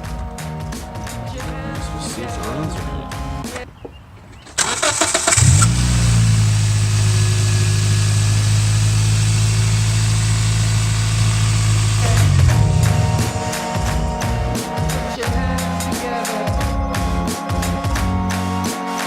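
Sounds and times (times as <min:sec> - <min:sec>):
starter cranking engine: 0:04.4 - 0:13.6
car engine idling: 0:04.6 - 0:14.6.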